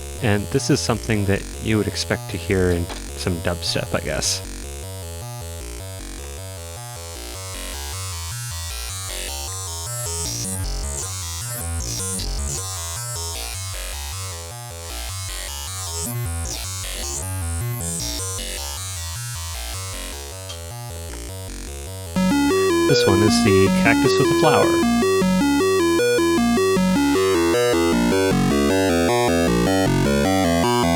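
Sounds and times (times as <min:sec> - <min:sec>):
gritty synthesizer tone: 0:22.2 - 0:30.9.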